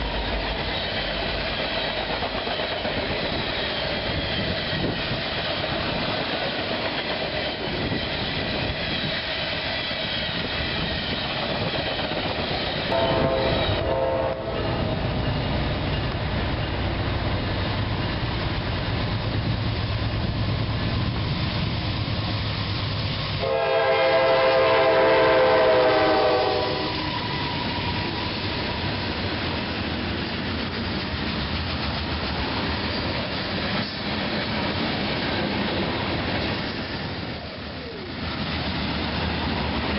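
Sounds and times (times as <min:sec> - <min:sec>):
train passing on rails: 0:00.0 - 0:39.9
train horn blasts: 0:12.9 - 0:14.9, 0:23.4 - 0:27.3.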